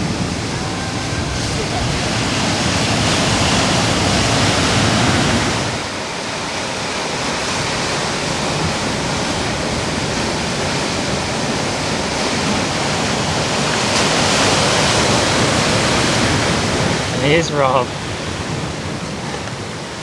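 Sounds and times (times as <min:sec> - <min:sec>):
ocean waves breaking: 0:00.0 - 0:20.0.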